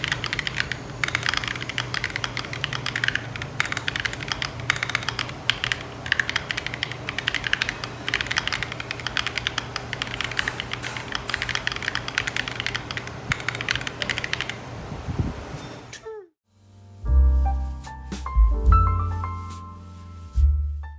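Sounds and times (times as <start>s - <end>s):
mechanical keyboard typing: 0.0s - 14.7s.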